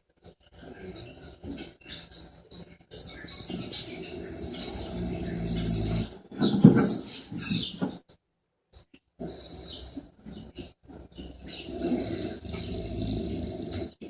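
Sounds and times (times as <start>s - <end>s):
loud snort: 3.9s - 6.2s, 9.2s - 10.1s, 11.4s - 14.0s
snuffles: 4.0s - 6.2s, 11.4s - 14.0s
person snoring: 4.2s - 6.1s, 11.7s - 14.0s.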